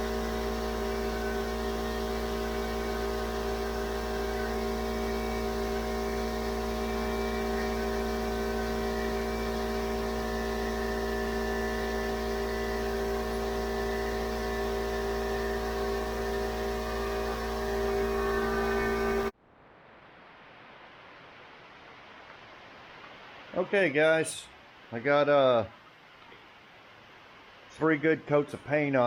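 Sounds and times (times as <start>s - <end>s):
electric motor hum: 0.0s - 19.3s.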